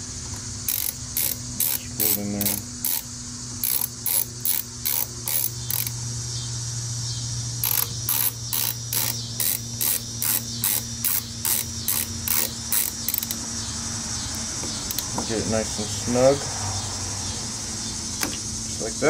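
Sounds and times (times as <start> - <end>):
hand ratchet clicking: 0.6 - 6.0, 7.6 - 13.4, 14.3 - 15.2.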